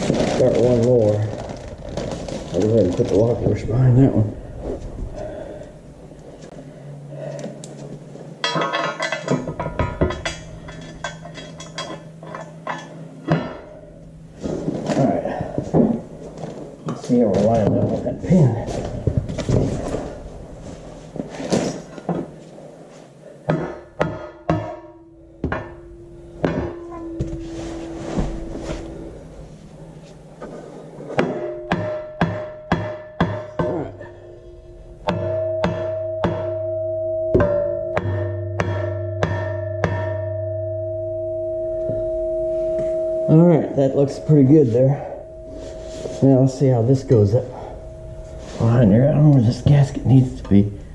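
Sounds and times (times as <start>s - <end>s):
faint steady hum: 0.0s - 50.9s
metallic ringing: 8.0s - 22.4s, 23.5s - 50.9s
hammer knocking on steel plate: 23.5s - 25.8s, 31.2s - 33.8s.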